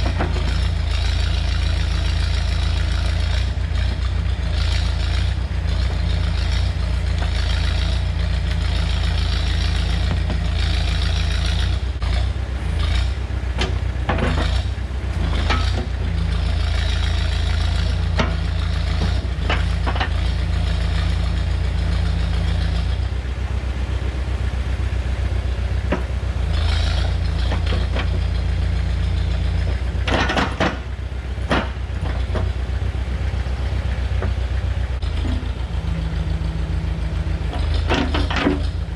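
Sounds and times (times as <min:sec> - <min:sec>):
heavy machine engine running: 0:00.0 - 0:38.9
short knocks and clanks: 0:13.6 - 0:16.0, 0:29.6 - 0:32.6, 0:37.5 - 0:38.8.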